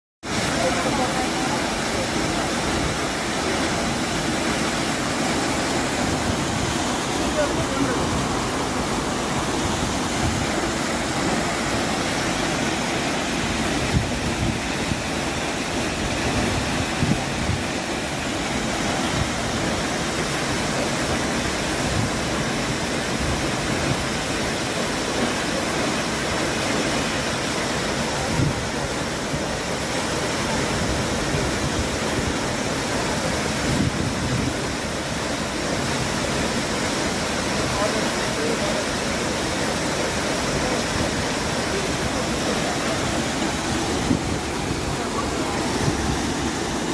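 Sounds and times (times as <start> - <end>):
waterfall rushing: 0.2 - 46.9.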